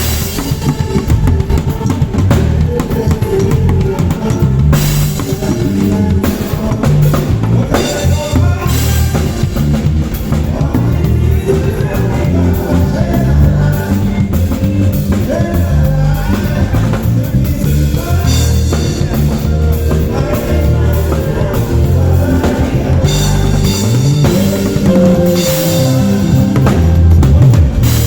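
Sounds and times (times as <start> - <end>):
bass line: 0.0 - 28.0
drum kit: 0.0 - 28.0
guitar: 0.0 - 28.0
person singing: 0.0 - 28.0.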